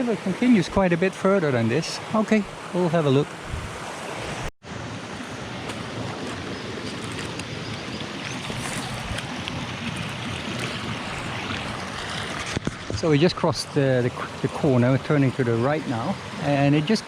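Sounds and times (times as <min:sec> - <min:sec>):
river flowing over rock: 0:00.0 - 0:12.9.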